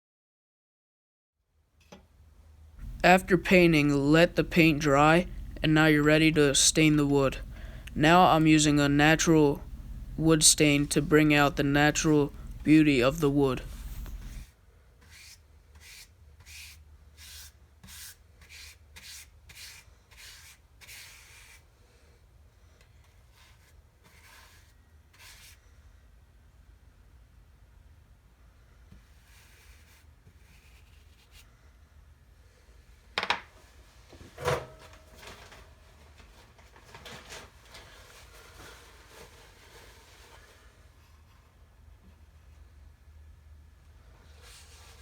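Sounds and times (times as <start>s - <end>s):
faint rubbing: 2.8s - 14.5s.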